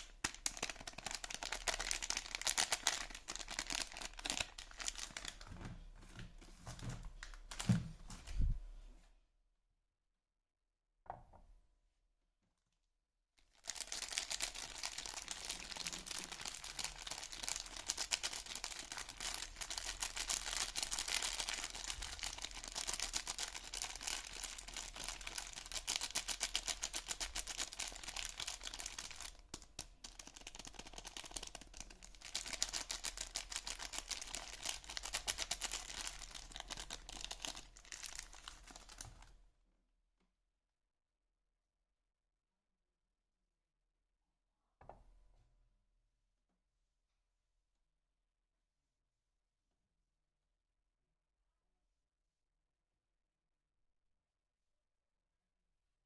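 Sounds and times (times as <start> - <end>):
crinkling of wrapping: 0.0 - 8.5, 13.4 - 39.4.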